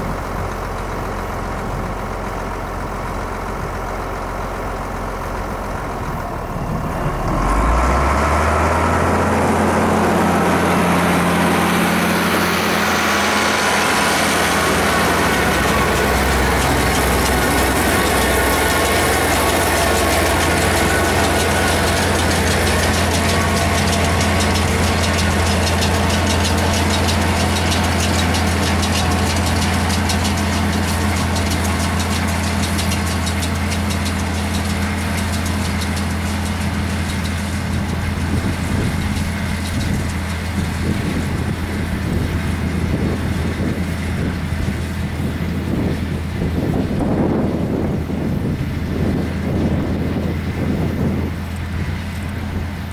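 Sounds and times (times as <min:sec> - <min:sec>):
tractor diesel engine: 0:00.0 - 0:52.9
fast mechanical clatter: 0:12.9 - 0:42.3.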